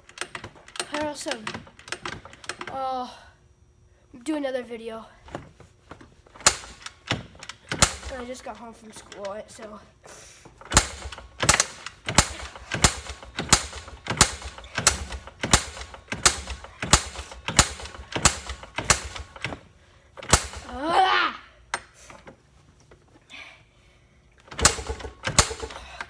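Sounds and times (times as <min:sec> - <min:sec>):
kick-starter clacking: 0:10.6 - 0:19.6, 0:24.5 - 0:26.0.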